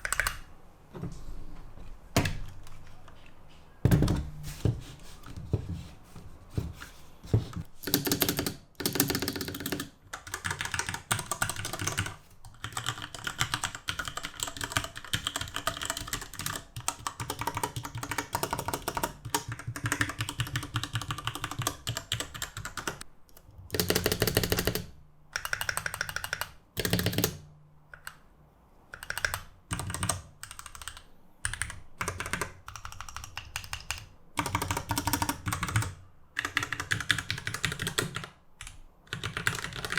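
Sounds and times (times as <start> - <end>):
rapid keyboard key clicks: 0.0 - 0.5, 7.6 - 27.4, 29.0 - 39.9.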